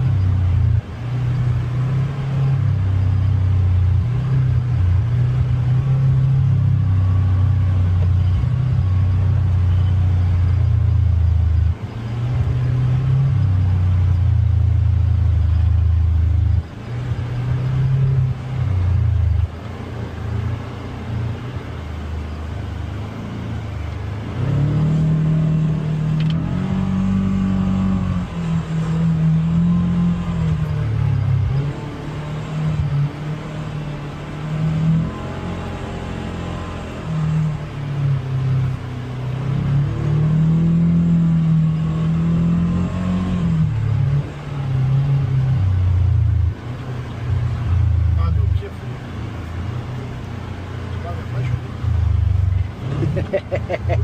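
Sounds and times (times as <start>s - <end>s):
utv engine revving: 0.0s - 54.0s.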